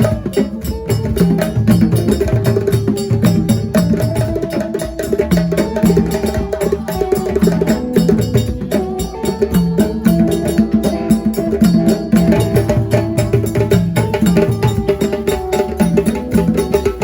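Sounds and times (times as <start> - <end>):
fast steady percussion: 0.0 - 17.0.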